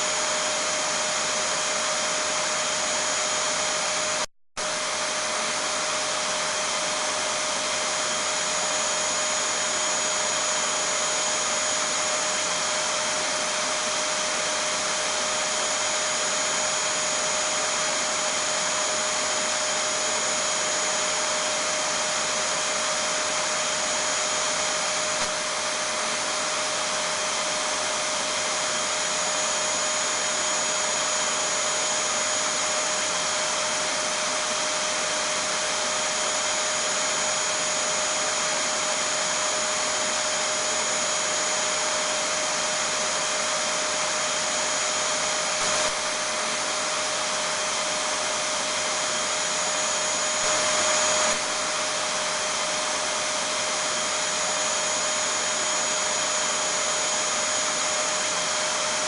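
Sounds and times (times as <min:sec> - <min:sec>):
vacuum cleaner motor running: 0:00.0 - 0:59.0.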